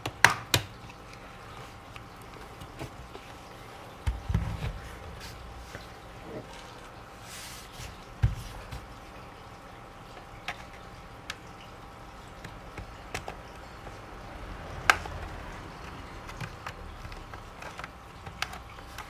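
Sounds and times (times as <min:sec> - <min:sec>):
plastic laptop parts clicking: 0:00.0 - 0:01.2, 0:10.2 - 0:11.6, 0:12.3 - 0:19.0.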